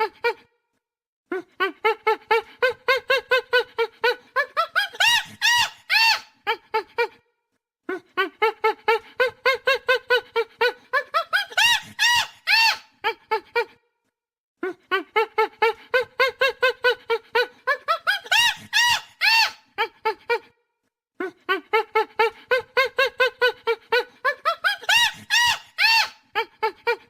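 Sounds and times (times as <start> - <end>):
chimpanzee hooting and screaming: 4.7 - 6.5, 11.0 - 13.0, 17.8 - 19.9, 23.0 - 27.0.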